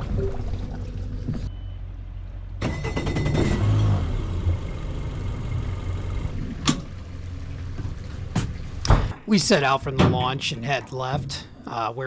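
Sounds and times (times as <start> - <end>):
boat engine running: 0.0 - 1.8.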